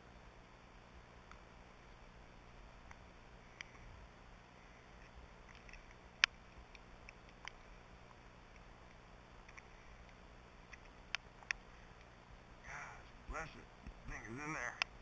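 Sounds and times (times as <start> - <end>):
sharp clicks: 5.0 - 7.6, 8.5 - 12.1.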